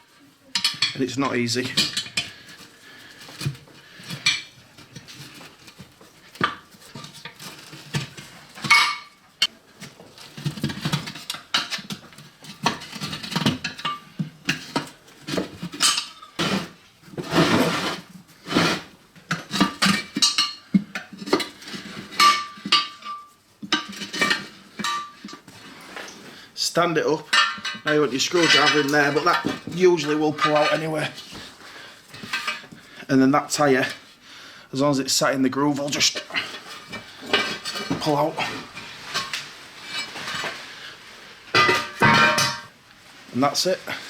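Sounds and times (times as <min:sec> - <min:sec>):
metal tools clinking on wheel rim: 0:41.6 - 0:42.7.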